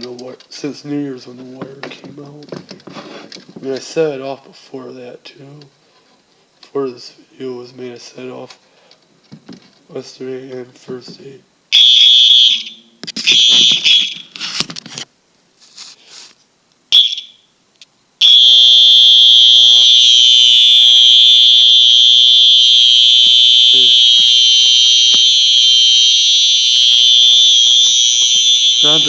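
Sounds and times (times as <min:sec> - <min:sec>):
fire alarm tone: 0:11.7 - 0:14.3, 0:16.9 - 0:17.5, 0:18.2 - 0:29.0.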